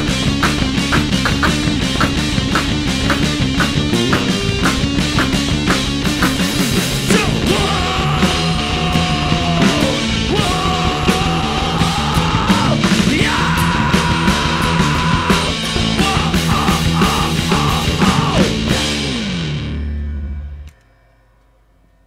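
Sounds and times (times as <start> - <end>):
rock band playing live: 0.0 - 20.3.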